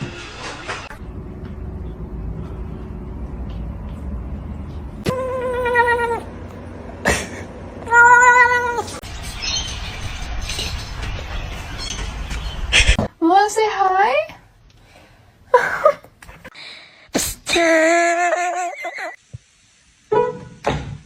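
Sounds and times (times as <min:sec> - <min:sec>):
cat meowing: 0:05.1 - 0:06.3.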